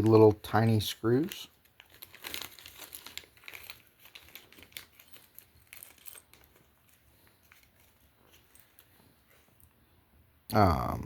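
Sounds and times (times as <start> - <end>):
small metal parts clicking: 1.8 - 8.9.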